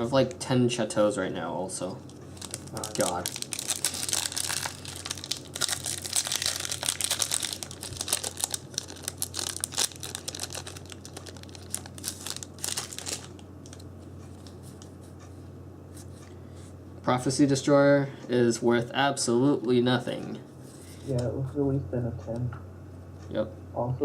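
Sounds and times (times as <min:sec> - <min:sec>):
steady low hum: 0:00.0 - 0:24.0
foil wrapper crinkling and tearing: 0:02.0 - 0:14.9.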